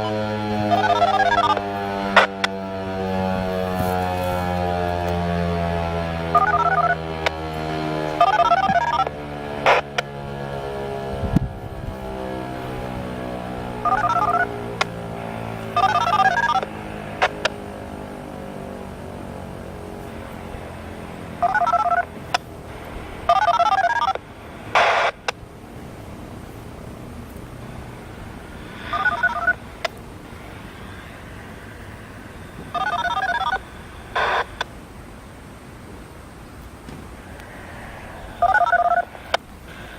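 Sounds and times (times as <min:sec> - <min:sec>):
radio static burst: 0:00.0 - 0:05.5, 0:06.3 - 0:07.4, 0:08.1 - 0:10.1, 0:13.6 - 0:18.2, 0:20.0 - 0:39.9
steady low hum: 0:00.0 - 0:39.9
touch-tone beeps: 0:28.9 - 0:29.6
sharp clicks: 0:28.9 - 0:30.0.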